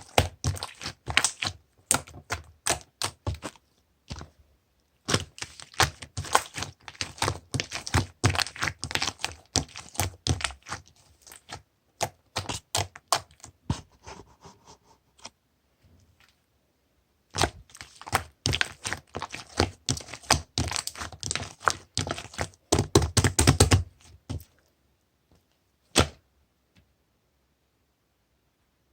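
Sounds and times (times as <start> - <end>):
slime squished by hand: 0.0 - 4.3, 5.0 - 13.5, 17.3 - 24.5.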